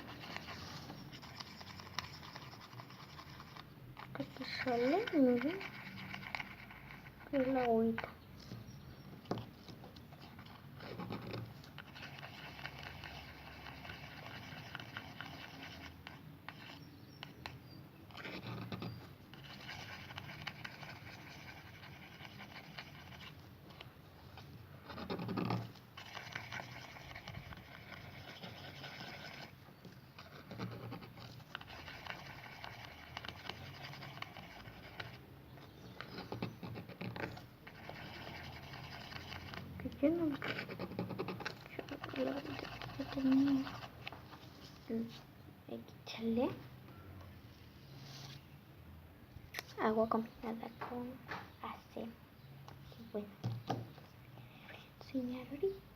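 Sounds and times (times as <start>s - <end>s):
utensil scraping slime in container: 0.0s - 8.0s, 30.2s - 45.2s.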